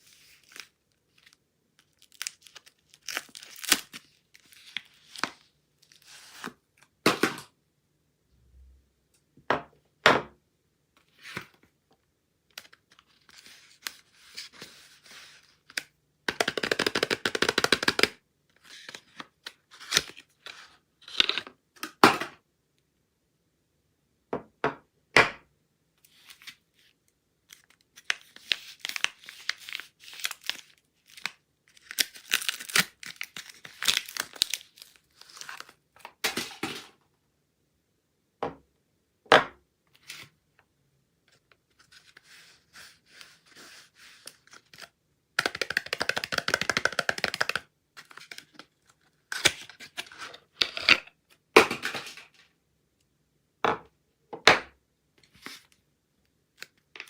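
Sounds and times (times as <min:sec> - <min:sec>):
packaging tearing and crinkling: 0:00.4 - 0:05.2, 0:27.5 - 0:35.7.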